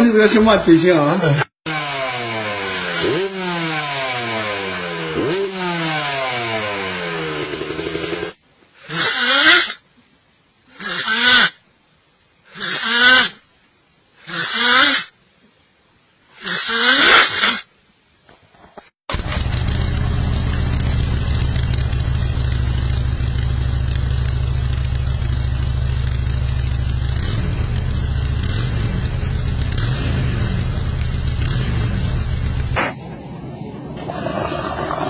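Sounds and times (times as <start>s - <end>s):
engine running: 1.7s - 8.4s, 19.1s - 35.0s.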